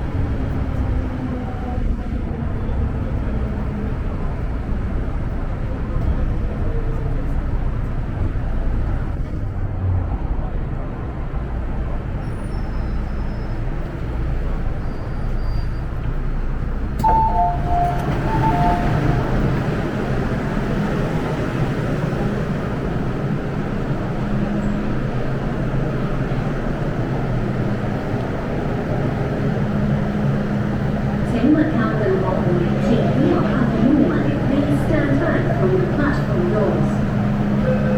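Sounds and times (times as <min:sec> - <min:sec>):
train wheels rumbling: 0:00.0 - 0:37.9
two-note electronic tone: 0:17.0 - 0:19.5.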